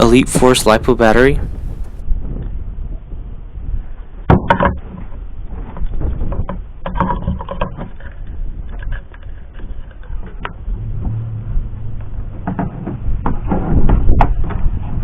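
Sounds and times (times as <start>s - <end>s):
low rumble: 9.7s - 15.0s.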